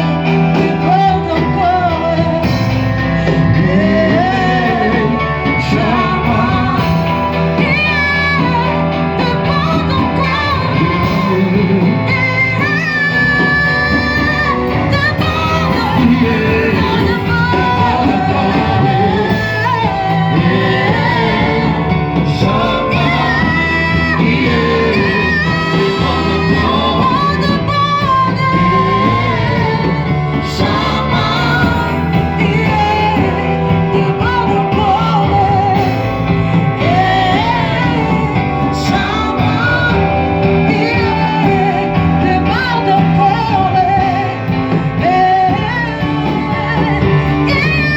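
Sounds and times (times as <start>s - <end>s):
band accompaniment: 0.0s - 47.9s
people singing worship song: 0.0s - 47.9s.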